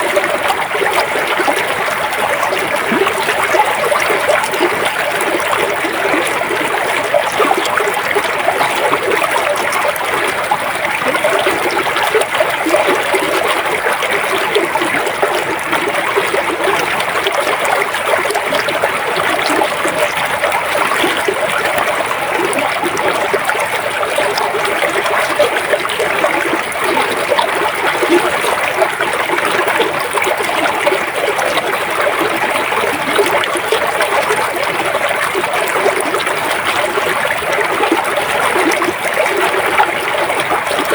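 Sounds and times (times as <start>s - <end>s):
river water flowing: 0.0s - 40.9s.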